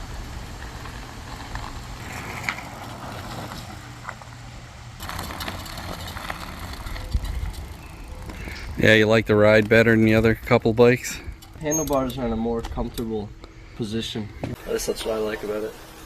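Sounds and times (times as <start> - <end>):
electric bike motor humming: 0.0 - 11.6
wind noise: 5.1 - 11.7.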